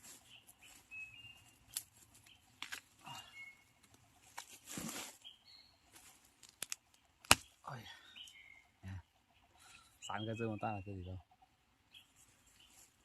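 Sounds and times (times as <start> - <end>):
rustling in undergrowth: 0.0 - 7.6
bird chirps: 0.2 - 3.8, 5.2 - 5.9, 6.9 - 12.9
bamboo shoots snapping: 1.7 - 2.0, 2.6 - 3.0, 3.8 - 5.1, 6.4 - 7.6.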